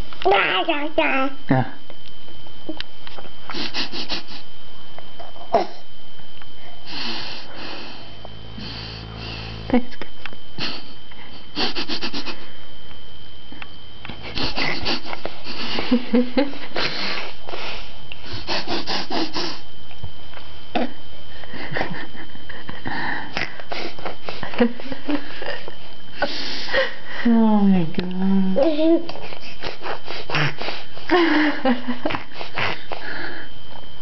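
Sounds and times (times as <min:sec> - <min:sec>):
baby sniffing: 0:03.5 - 0:04.4, 0:06.9 - 0:09.6, 0:10.6 - 0:12.4, 0:14.2 - 0:15.8, 0:16.8 - 0:19.7, 0:29.1 - 0:31.1.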